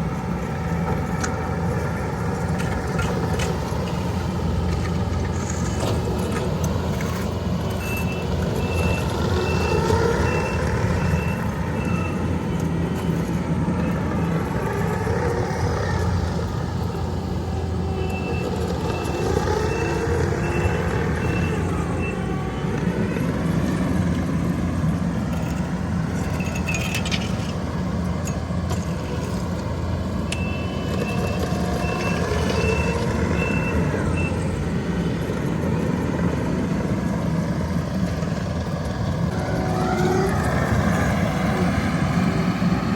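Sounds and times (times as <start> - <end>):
diesel engines running: 0.0 - 42.9
reversing alarm beeping: 6.9 - 27.5, 30.2 - 34.7, 39.3 - 42.9.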